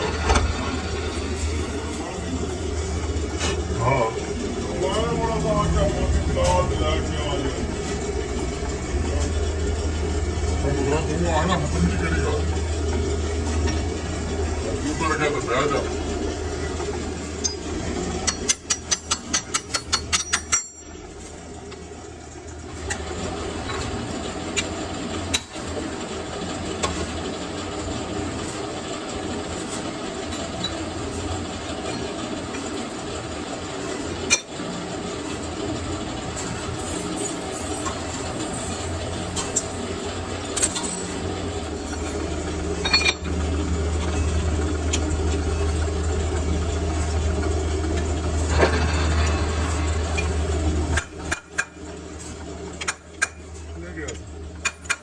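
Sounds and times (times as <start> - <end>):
workshop machinery humming: 0.0 - 55.0.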